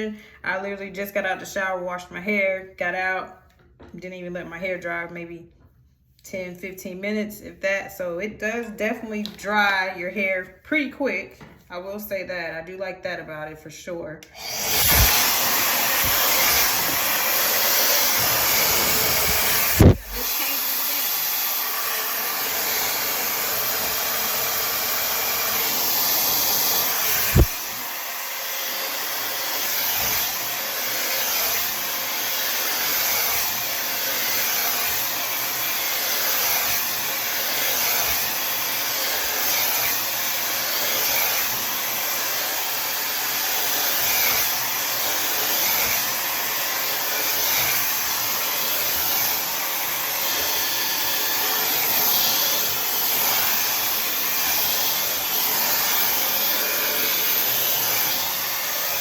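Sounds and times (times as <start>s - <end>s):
hair dryer blowing: 14.2s - 59.0s.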